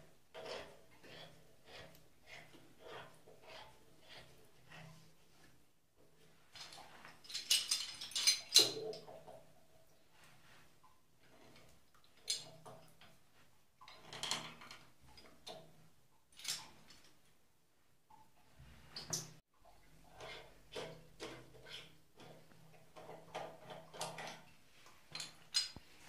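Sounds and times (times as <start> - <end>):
metal tools clinking: 6.6 - 8.8.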